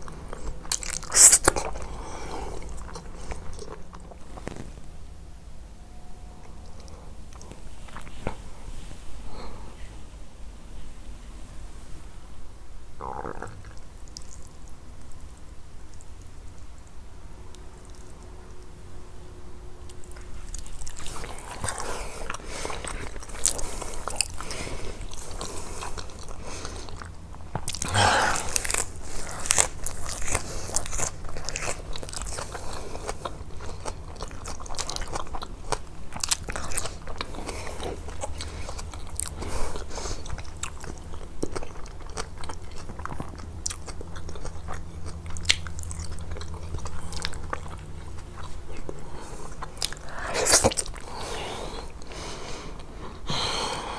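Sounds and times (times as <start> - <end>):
biting and chewing: 0.0 - 4.9, 19.9 - 53.9
faint low hum: 0.0 - 53.9.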